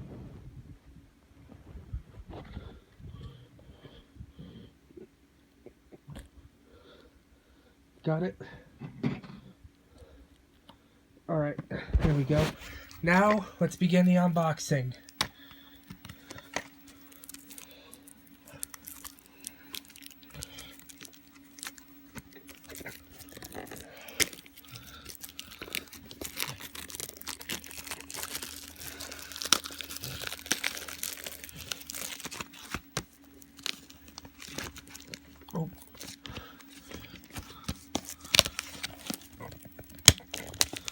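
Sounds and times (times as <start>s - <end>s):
faint steady hum: 0.0s - 40.9s
packaging crinkling and tearing: 12.0s - 40.9s.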